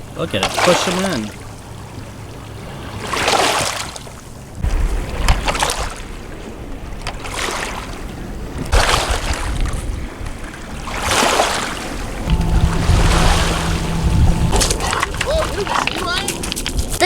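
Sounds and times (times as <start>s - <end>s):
small waves washing over rocks: 3.0s - 12.2s
wind rumble on microphone: 8.1s - 11.0s, 12.0s - 17.0s.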